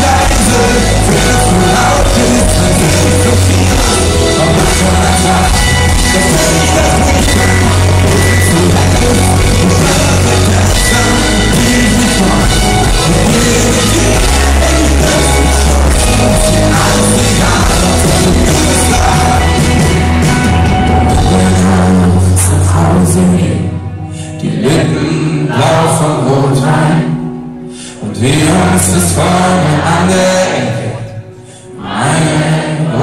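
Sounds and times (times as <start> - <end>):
booming bass: 0.0 - 22.8
live pop-rock band: 0.0 - 33.0.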